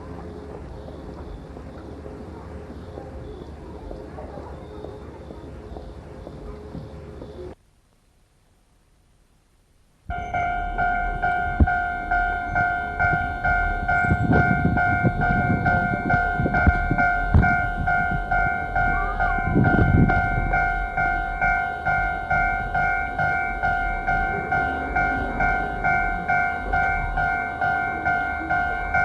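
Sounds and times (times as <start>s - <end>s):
level crossing bell ringing: 10.1s - 29.0s
low rumbling: 10.1s - 29.0s.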